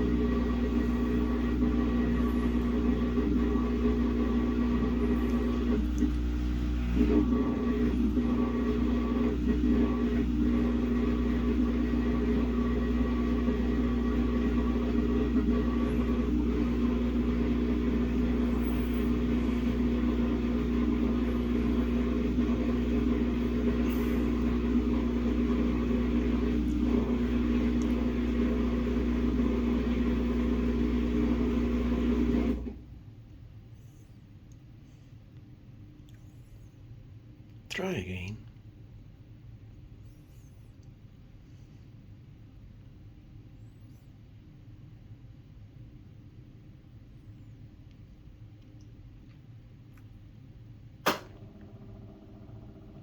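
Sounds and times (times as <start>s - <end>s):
washing machine motor hum: 0.0s - 33.4s, 44.9s - 53.0s.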